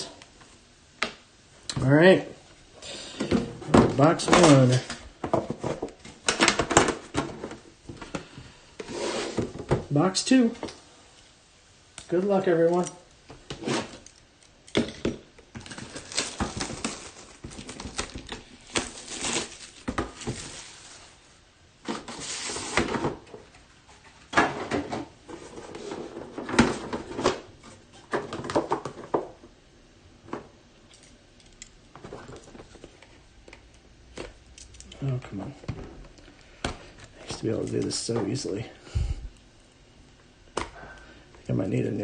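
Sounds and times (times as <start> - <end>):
packaging rustling: 15.5 - 23.1.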